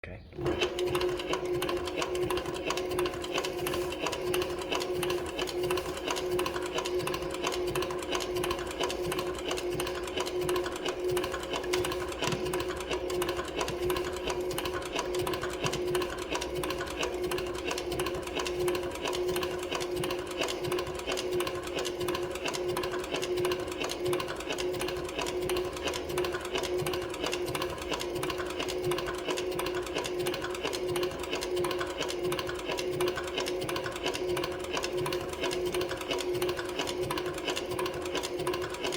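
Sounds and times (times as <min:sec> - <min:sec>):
motor hum: 0:00.3 - 0:38.9
sewing machine stitch clatter: 0:00.4 - 0:38.9.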